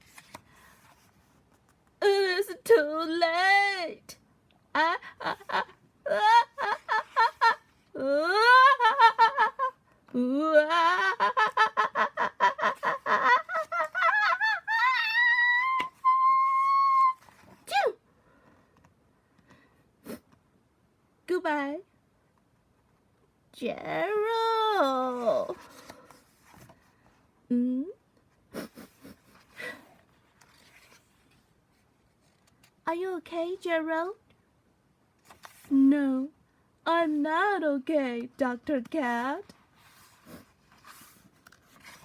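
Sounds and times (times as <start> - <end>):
soft rustles: 0.0 - 2.0, 28.9 - 32.8, 35.2 - 35.8, 39.1 - 42.0
person wailing and sobbing: 4.8 - 18.0.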